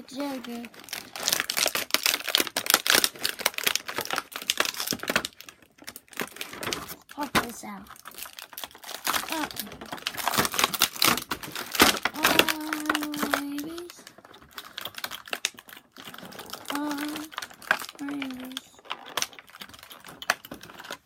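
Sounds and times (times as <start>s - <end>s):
plastic packaging clicking and crinkling: 0.0s - 21.0s
drawn-out voice: 12.1s - 14.0s, 16.6s - 17.3s, 17.9s - 18.8s.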